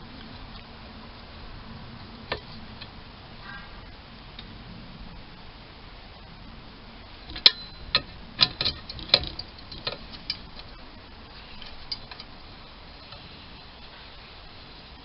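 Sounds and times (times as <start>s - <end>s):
hand tools clicking on metal: 7.3s - 10.8s.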